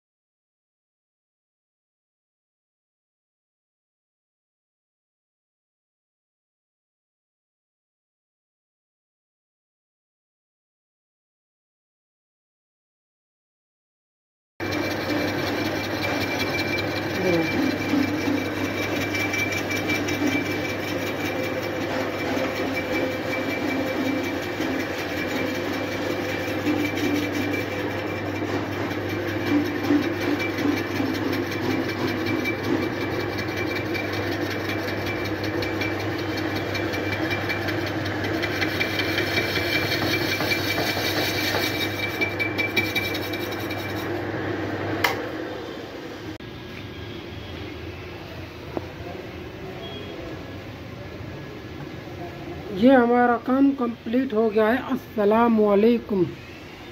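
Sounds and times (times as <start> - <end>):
workshop machine humming and whining: 14.6 - 56.9.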